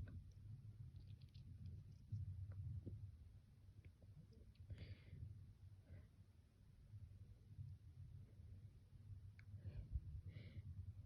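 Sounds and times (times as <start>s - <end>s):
soft breath: 4.6s - 6.4s, 9.4s - 11.0s.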